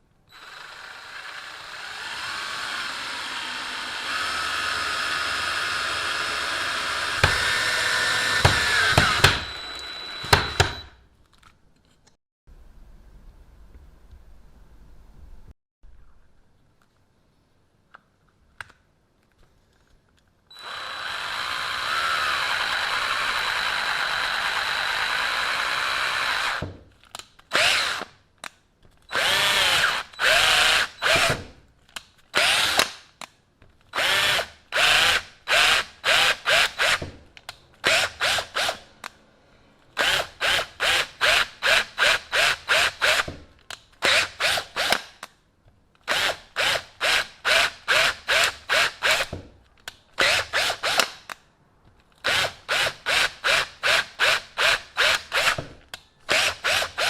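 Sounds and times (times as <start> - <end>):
cordless drill whining: 0.3 - 11.0, 20.5 - 26.7, 27.5 - 28.1, 29.1 - 31.4, 32.4 - 32.8, 33.9 - 37.0, 37.8 - 38.8, 44.0 - 45.0, 50.2 - 51.0, 52.2 - 55.6, 56.3 - 57.0
drill motor starting and stopping: 0.3 - 11.0, 20.5 - 26.6, 27.5 - 28.1, 29.1 - 31.4, 34.0 - 37.0, 52.2 - 55.6, 56.3 - 57.0.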